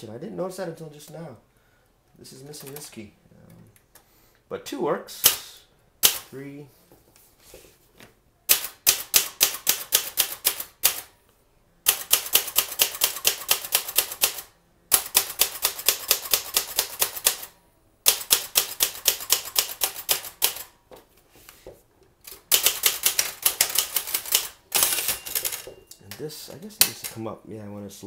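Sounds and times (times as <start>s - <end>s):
manual typewriter typing: 2.5s - 3.0s, 6.0s - 6.3s, 8.5s - 11.1s, 11.9s - 17.5s, 18.1s - 20.8s, 22.2s - 27.2s.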